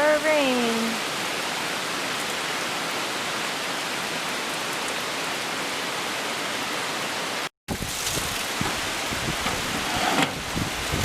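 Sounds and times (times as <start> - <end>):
steady rain falling: 0.0 - 11.0
wind buffeting microphone: 7.7 - 11.0.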